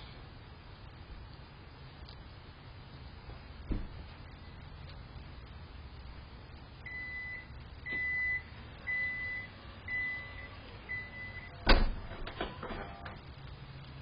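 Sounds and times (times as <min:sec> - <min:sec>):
loud thump: 0:03.6 - 0:04.0
high-pitched electronic beeps: 0:06.9 - 0:11.6.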